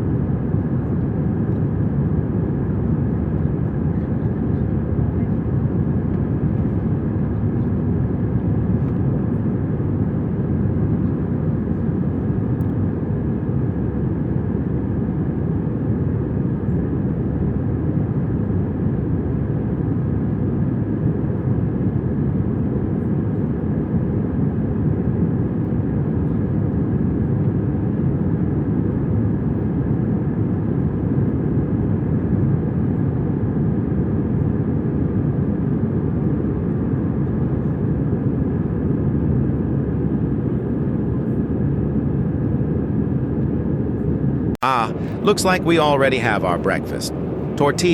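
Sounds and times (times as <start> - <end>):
airliner cabin engine rumble: 0.0 - 47.9
faint steady hum: 42.0 - 47.9.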